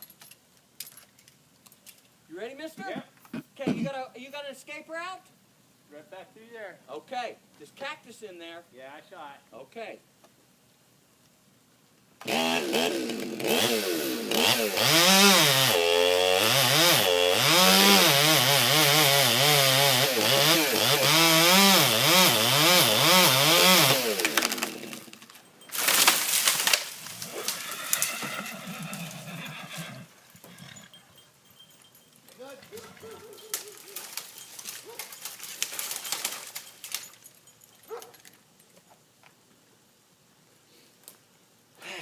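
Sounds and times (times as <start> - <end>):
chainsaw cutting: 12.2 - 28.2, 32.4 - 37.2.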